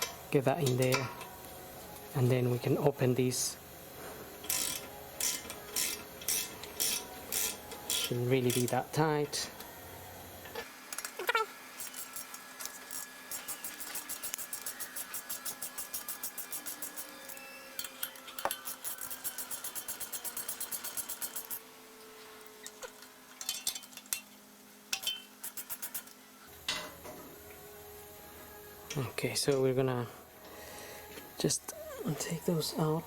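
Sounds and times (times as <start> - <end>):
ratchet clicking: 4.4 - 8.8, 11.8 - 17.1, 17.8 - 21.6, 25.0 - 26.1.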